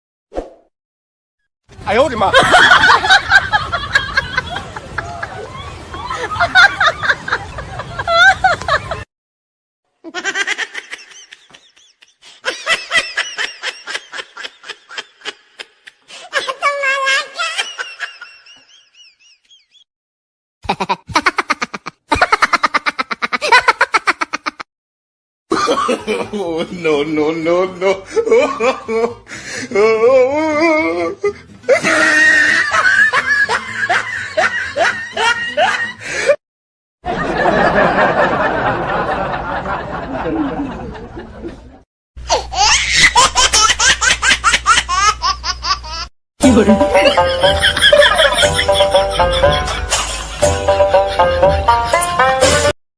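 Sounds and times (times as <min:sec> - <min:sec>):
people laughing: 0:02.2 - 0:09.1, 0:10.1 - 0:16.0, 0:20.6 - 0:24.6, 0:25.5 - 0:29.2, 0:29.8 - 0:36.4, 0:37.1 - 0:41.8, 0:46.4 - 0:52.7
laughing sound effect: 0:20.6 - 0:24.6, 0:31.7 - 0:36.0, 0:40.0 - 0:52.8.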